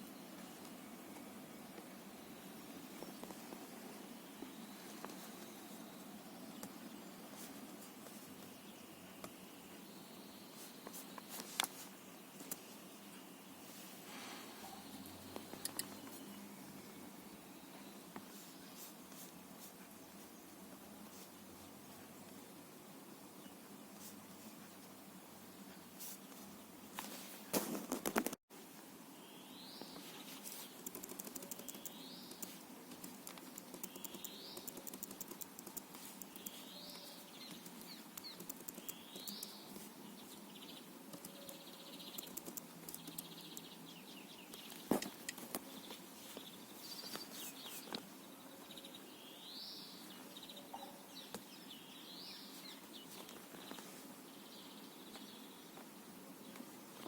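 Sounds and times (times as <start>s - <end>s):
bird chirping: 29.2s - 55.8s
faint clicking: 30.6s - 39.8s, 41.1s - 43.8s.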